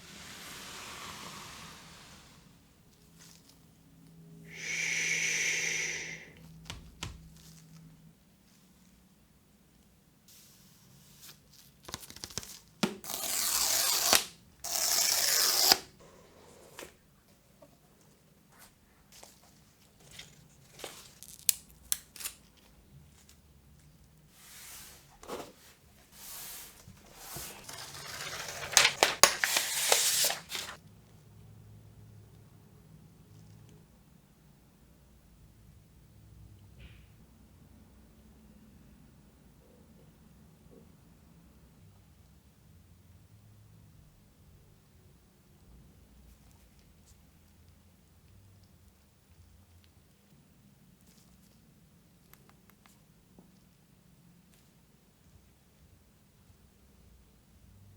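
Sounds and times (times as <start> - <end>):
cardboard and paper packaging crinkling: 19.2 - 22.7, 26.9 - 30.8
cardboard packaging scraping: 24.6 - 30.8.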